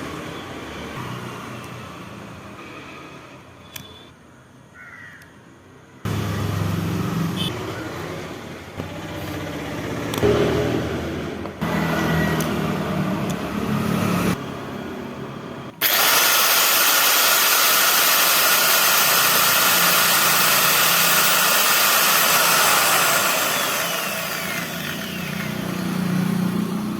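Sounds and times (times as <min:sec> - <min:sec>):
angle grinder whining: 0:15.8 - 0:26.7.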